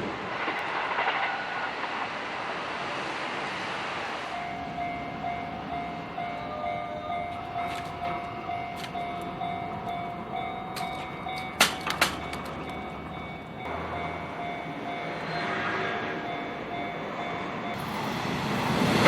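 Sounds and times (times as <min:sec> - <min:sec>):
level crossing warning bell: 0:04.3 - 0:18.5.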